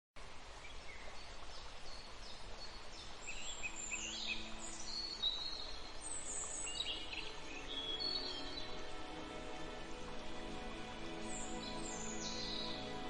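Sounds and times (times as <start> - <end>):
steady background hiss: 0.2 - 13.0
birds chirping and whistling: 11.2 - 12.9.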